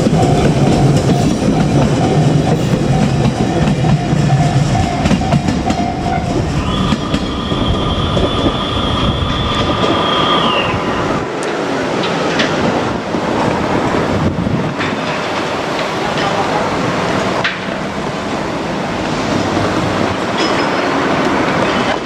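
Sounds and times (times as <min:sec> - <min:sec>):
crossing warning bell: 0:00.0 - 0:11.4, 0:15.0 - 0:22.0
steady high whine: 0:00.0 - 0:11.9
train wheels rumbling and clattering: 0:00.0 - 0:22.0.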